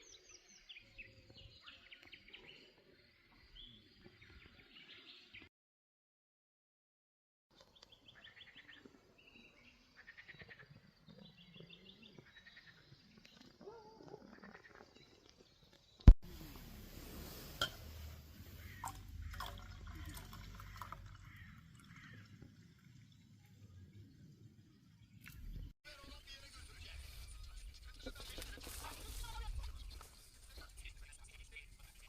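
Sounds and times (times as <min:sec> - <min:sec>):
songbirds singing: 0:00.0 - 0:05.5, 0:07.5 - 0:16.1, 0:18.3 - 0:24.2.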